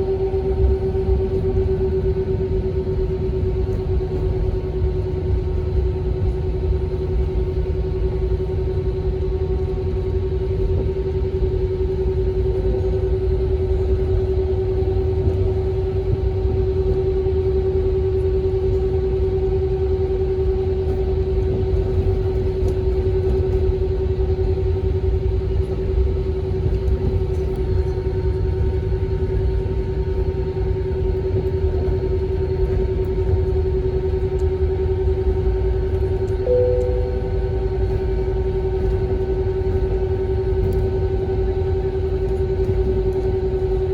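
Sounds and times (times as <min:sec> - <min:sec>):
low rumble: 0:00.0 - 0:43.9
jet engines humming: 0:24.1 - 0:43.9
steady tone: 0:36.4 - 0:39.5.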